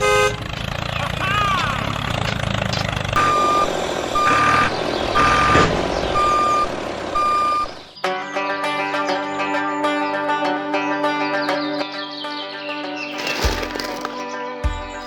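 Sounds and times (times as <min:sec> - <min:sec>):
reversing alarm beeping: 0:03.2 - 0:07.9
music: 0:08.0 - 0:15.0.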